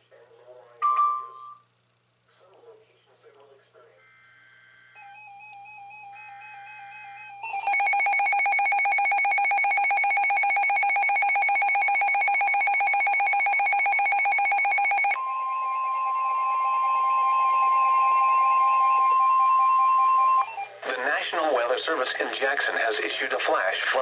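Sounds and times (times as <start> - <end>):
rapidly pulsing electronic alarm: 5.0 - 20.6
steady warning alarm tone: 5.0 - 20.6
faint data bursts: 6.5 - 15.6.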